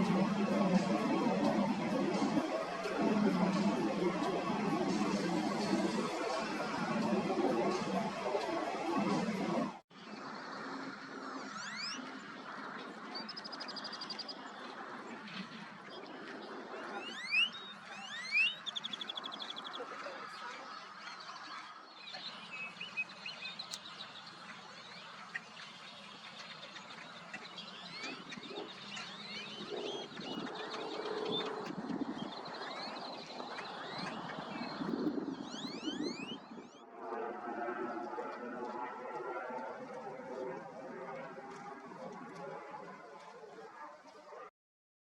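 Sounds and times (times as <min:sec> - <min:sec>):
bird chirps: 0:16.9 - 0:36.9
bird trills: 0:17.0 - 0:19.8, 0:21.0 - 0:36.8.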